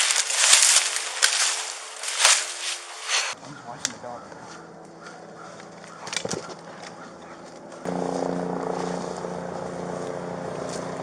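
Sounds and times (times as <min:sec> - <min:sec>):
helicopter engine and rotor drone: 0:04.2 - 0:11.0.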